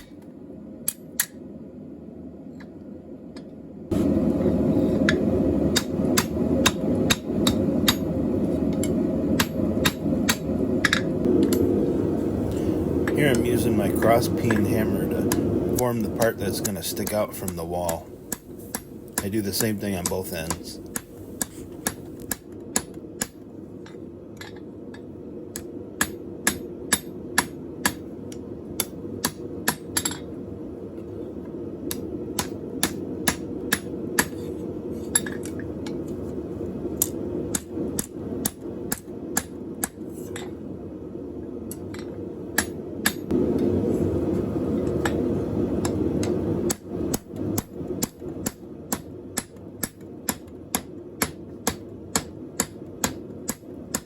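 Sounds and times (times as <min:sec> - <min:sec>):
low rushing noise: 0:03.9 - 0:23.1, 0:43.2 - 0:48.0
hammer striking steel on anvil: 0:05.1 - 0:08.1, 0:16.6 - 0:23.4, 0:26.0 - 0:28.0, 0:28.8 - 0:30.3, 0:41.9 - 0:43.3, 0:46.7 - 0:54.0.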